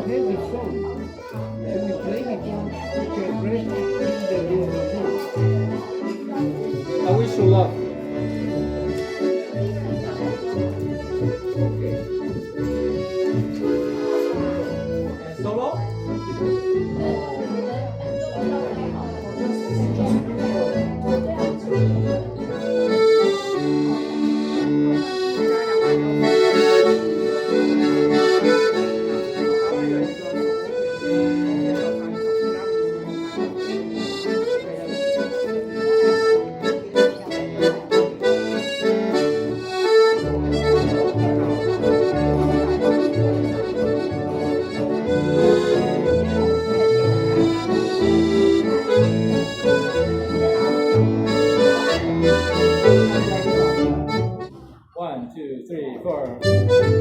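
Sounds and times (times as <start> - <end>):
accordion melody: 0.0 - 54.9, 56.2 - 57.0
live jazz band: 19.4 - 54.5
steady bass line: 40.2 - 54.4.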